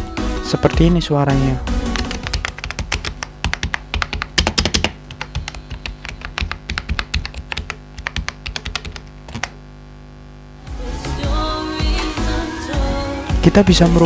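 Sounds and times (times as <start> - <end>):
mechanical keyboard typing: 1.9 - 9.5.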